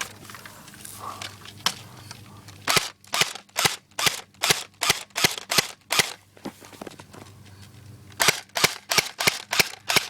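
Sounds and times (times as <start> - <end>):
airsoft guns firing: 8.2 - 10.0.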